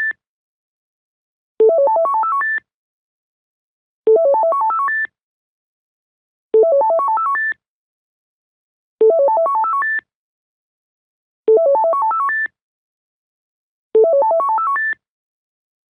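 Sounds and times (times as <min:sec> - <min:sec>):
telephone electronic ringtone: 0:01.6 - 0:02.4, 0:06.6 - 0:07.4, 0:09.0 - 0:09.8, 0:11.5 - 0:12.3, 0:14.0 - 0:14.8.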